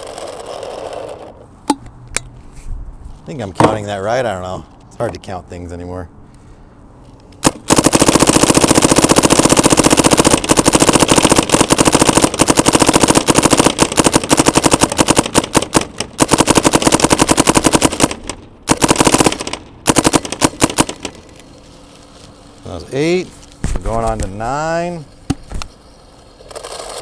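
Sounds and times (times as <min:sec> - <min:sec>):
paintball marker firing: 0:07.4 - 0:21.3, 0:23.6 - 0:24.6, 0:25.2 - 0:25.8.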